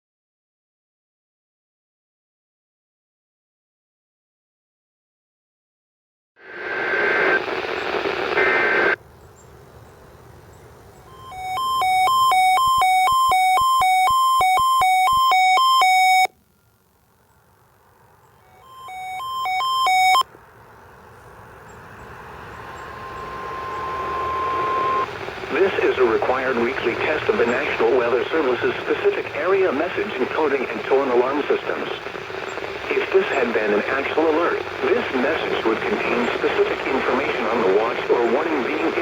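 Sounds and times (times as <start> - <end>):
radio hiss: 6.4 - 9.0, 22.2 - 39.0
data tones: 11.1 - 16.3, 18.4 - 20.3, 22.7 - 31.7
two-pitch alert alarm beeping: 11.1 - 16.3, 18.5 - 20.2, 22.9 - 25.0
steady tone: 18.4 - 20.2, 21.9 - 27.8.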